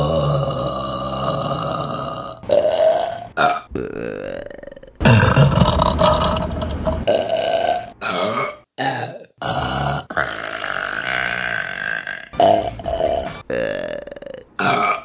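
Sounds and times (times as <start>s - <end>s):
woman burping loudly: 3.8s - 12.3s.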